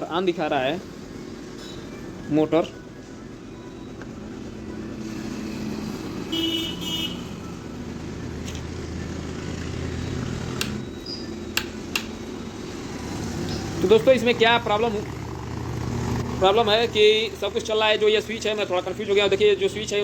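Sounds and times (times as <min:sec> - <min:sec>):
road traffic rumble: 0:00.0 - 0:20.0
sharp clicks: 0:10.5 - 0:10.8, 0:11.5 - 0:12.2.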